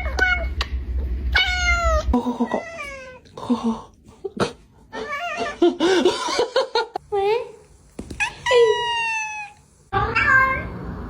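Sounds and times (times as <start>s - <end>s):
cat meowing: 8.1s - 10.7s.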